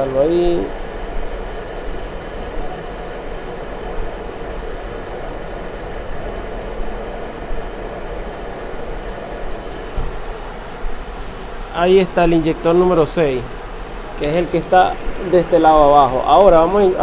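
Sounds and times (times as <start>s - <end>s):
misfiring engine idling: 9.6s - 17.0s.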